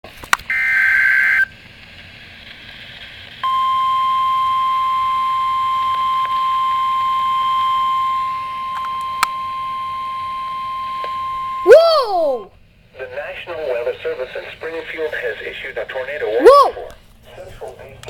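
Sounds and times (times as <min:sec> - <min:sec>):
single-pitch warning alarm tone: 0:03.4 - 0:11.7.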